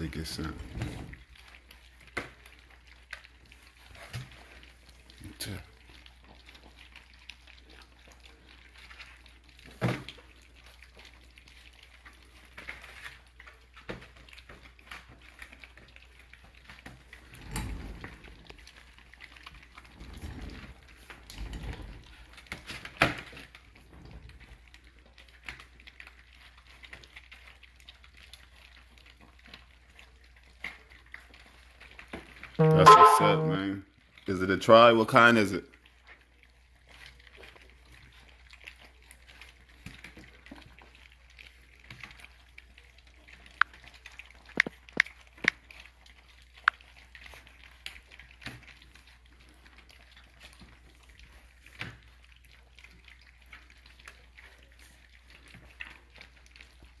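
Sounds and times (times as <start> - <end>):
puppies lapping and smacking food: 0.0 - 57.0.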